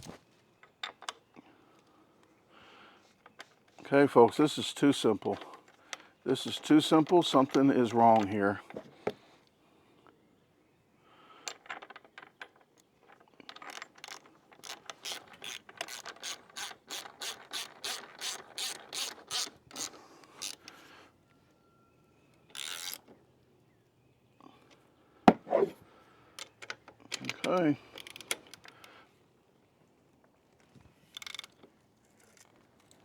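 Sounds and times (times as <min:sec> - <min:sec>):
short scrape: 0:25.3 - 0:25.8.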